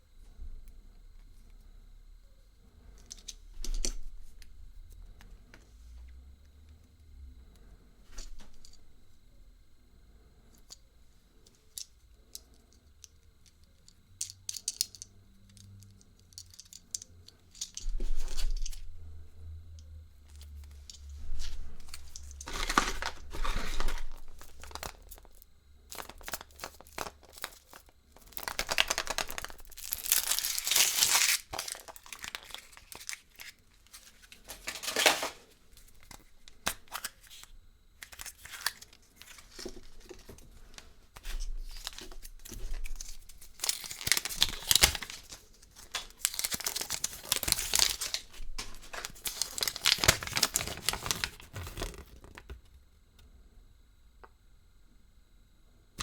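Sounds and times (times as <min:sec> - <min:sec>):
plastic wrapping crinkling and tearing: 0:20.4 - 0:35.4, 0:41.3 - 0:52.5.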